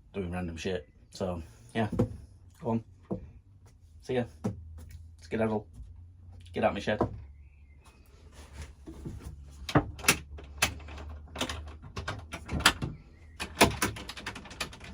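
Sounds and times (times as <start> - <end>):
sharp clicks and knocks: 9.0 - 14.9.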